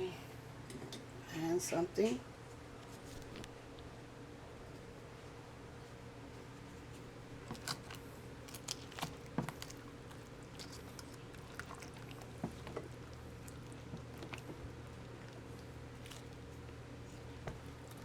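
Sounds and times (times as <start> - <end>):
steady low hum: 0.0 - 18.0
wet squishes of chicken in gravy: 7.5 - 18.0.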